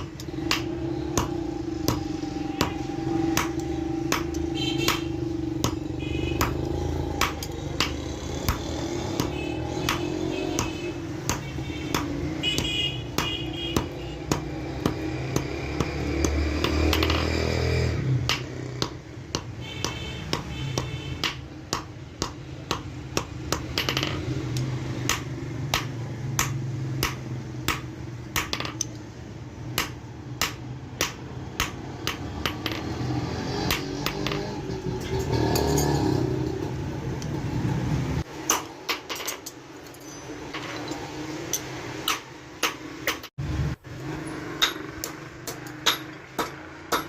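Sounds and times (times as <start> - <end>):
hammer striking steel on anvil: 0.0 - 29.0, 38.4 - 43.3, 44.5 - 47.0.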